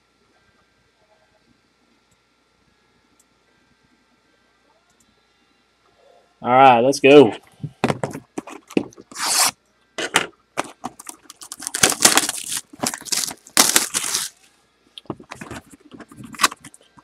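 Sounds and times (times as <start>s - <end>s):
packaging tearing and crinkling: 9.1s - 9.6s, 10.6s - 14.4s, 15.2s - 16.8s.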